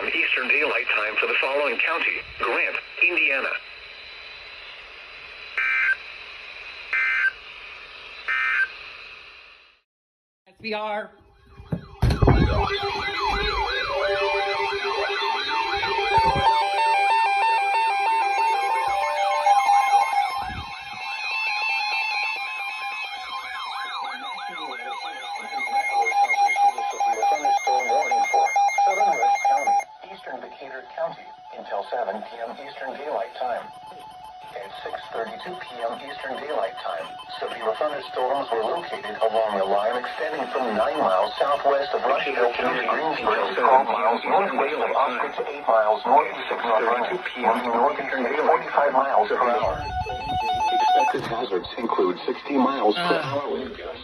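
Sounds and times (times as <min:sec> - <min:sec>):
radio static: 0:00.0 - 0:08.8, 0:11.6 - 0:54.0
siren-like wail sweeping: 0:11.3 - 0:30.2, 0:49.3 - 0:51.2
rapidly pulsing tone: 0:11.3 - 0:54.0
two-tone alert signals: 0:11.4 - 0:21.2, 0:22.5 - 0:29.9, 0:33.5 - 0:41.6, 0:49.6 - 0:51.5.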